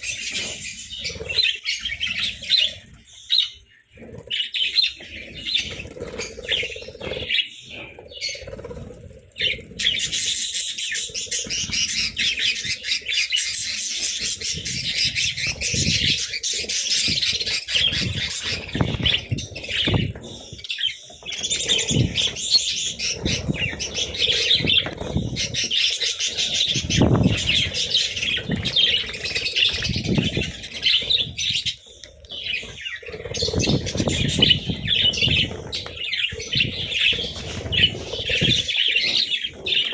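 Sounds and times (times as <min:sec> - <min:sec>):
wings flapping: 0:04.0 - 0:39.9
budgerigars chirping: 0:09.4 - 0:39.9.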